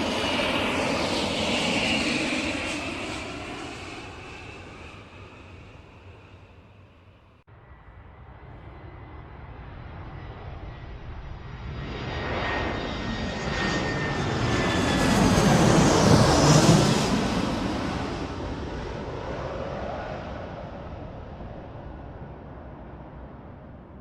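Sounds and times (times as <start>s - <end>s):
airplane passing overhead: 0.0s - 24.0s.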